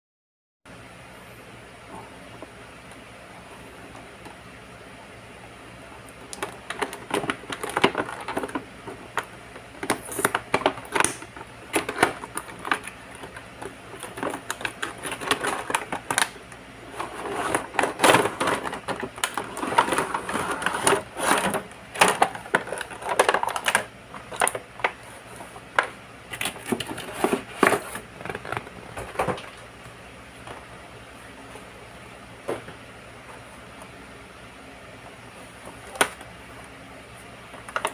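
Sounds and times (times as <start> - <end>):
packaging crinkling: 6.2 - 29.7.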